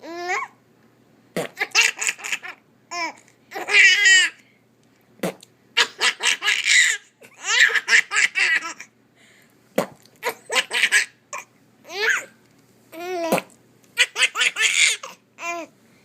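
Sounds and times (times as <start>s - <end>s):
baby laughing: 1.5s - 4.4s, 5.8s - 8.9s, 10.2s - 12.3s, 13.0s - 15.7s.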